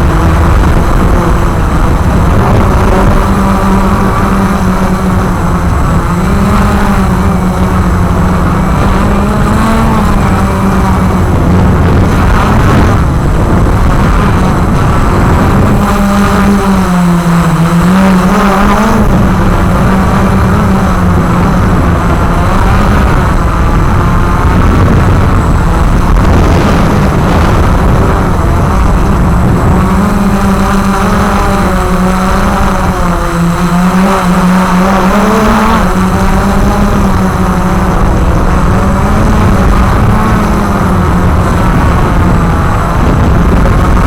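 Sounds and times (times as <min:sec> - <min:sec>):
drone propellers buzzing: 0:00.0 - 0:44.0
low rumble: 0:23.0 - 0:30.5.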